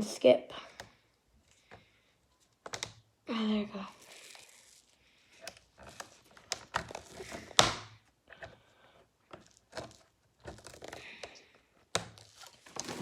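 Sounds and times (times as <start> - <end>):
tool clicking and scraping on plastic: 5.4 - 13.0.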